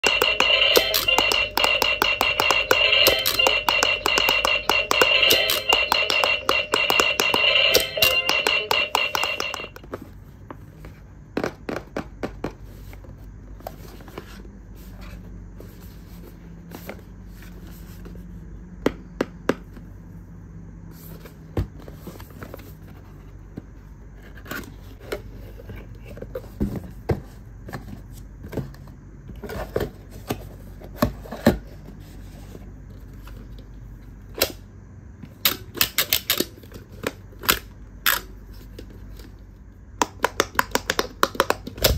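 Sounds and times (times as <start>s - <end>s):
plastic parts clicking and tapping: 40.0s - 41.9s.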